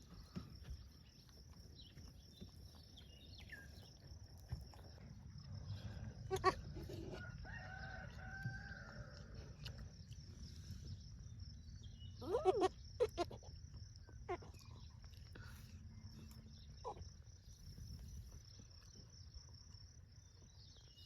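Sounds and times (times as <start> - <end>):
rooster crowing: 7.0 - 9.4.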